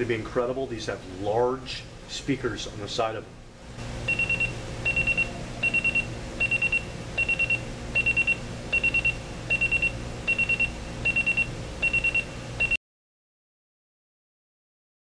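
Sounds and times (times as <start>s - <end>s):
alarm buzzer beeping: 4.0s - 12.8s.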